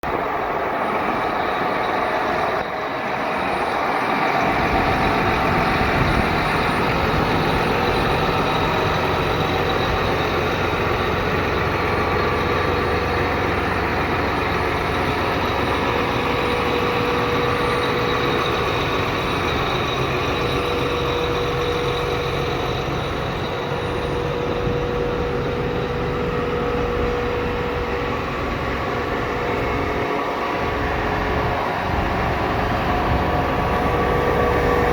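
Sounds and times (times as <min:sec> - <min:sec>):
tractor diesel engine running: 0:00.0 - 0:34.9.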